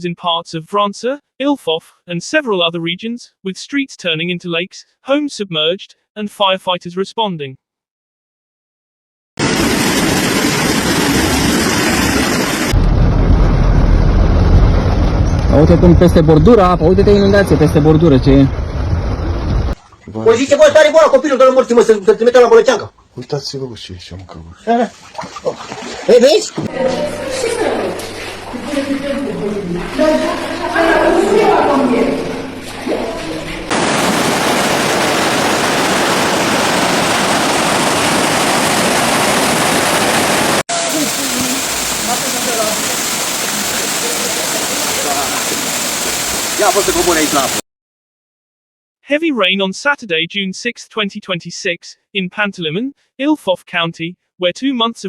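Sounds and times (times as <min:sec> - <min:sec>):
heavy rain and rushing floodwater: 0:09.4 - 0:12.8, 0:25.5 - 0:47.6
deep low rumble: 0:12.8 - 0:19.8.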